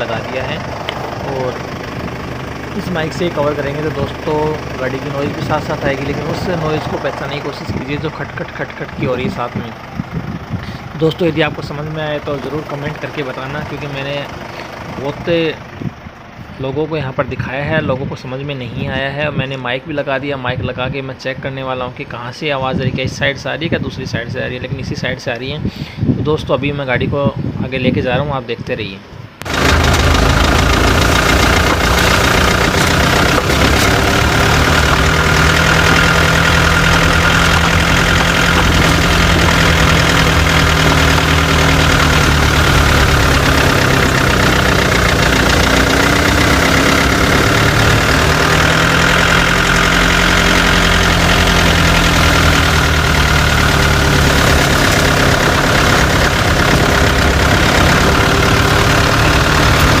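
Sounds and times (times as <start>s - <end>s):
car engine running: 0.0s - 16.8s, 29.4s - 60.0s
road and underbody noise: 0.0s - 60.0s.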